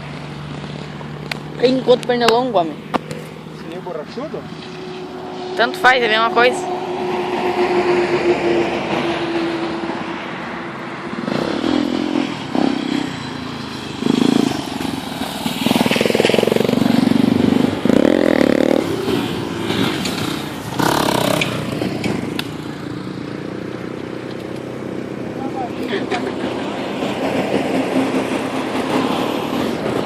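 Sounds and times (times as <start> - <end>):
off-road vehicle engine revving: 11.0 - 30.0.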